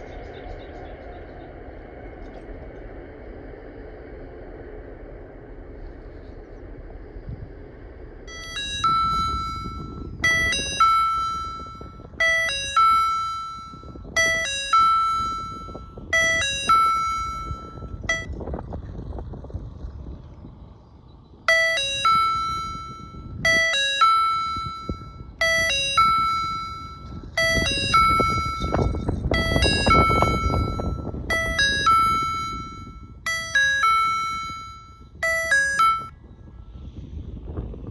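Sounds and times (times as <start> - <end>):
low rumble: 0.0 - 37.9
level crossing ding-dong chime: 8.3 - 18.3, 21.5 - 36.1.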